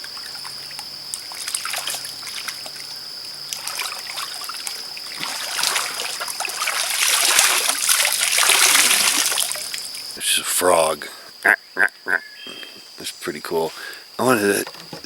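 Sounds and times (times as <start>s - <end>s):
stream water trickling: 0.0s - 10.2s
high insect buzz: 0.0s - 15.0s.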